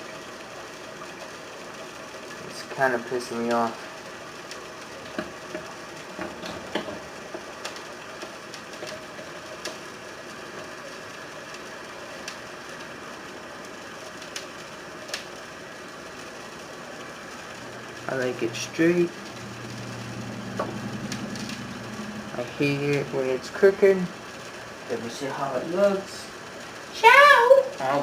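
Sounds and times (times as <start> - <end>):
steady mechanical hum: 0.0 - 28.0.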